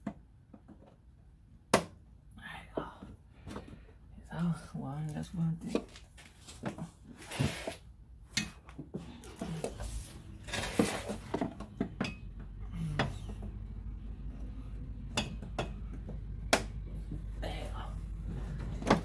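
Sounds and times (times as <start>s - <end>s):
plastic scraping rasp: 8.9s - 11.9s.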